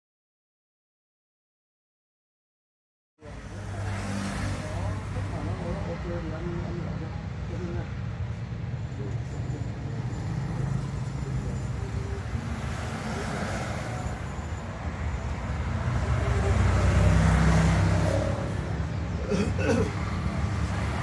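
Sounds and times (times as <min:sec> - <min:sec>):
road traffic: 0:03.2 - 0:21.0
vehicle engine passing close: 0:15.2 - 0:19.2.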